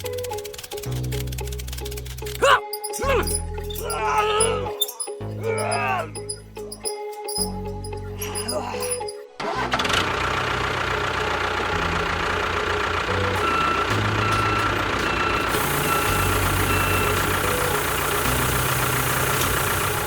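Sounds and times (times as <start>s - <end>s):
engine running: 0.0s - 2.4s, 9.4s - 20.0s
background music with bass line: 0.0s - 9.1s.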